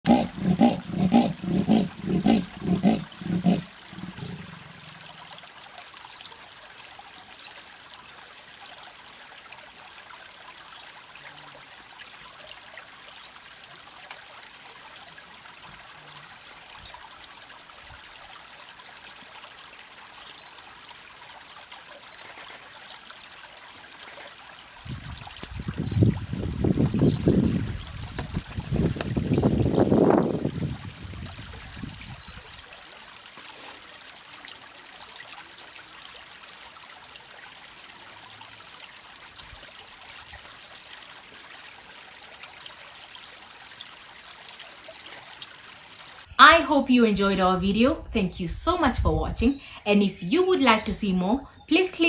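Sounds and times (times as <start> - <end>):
leopard sawing call: 0.1 - 4.9.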